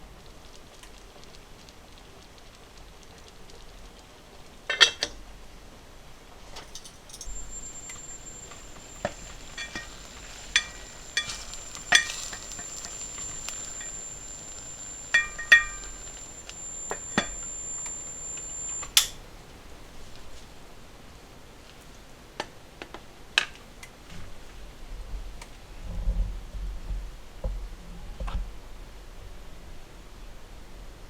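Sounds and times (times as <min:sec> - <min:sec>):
high-pitched whine: 0:07.2 - 0:19.2.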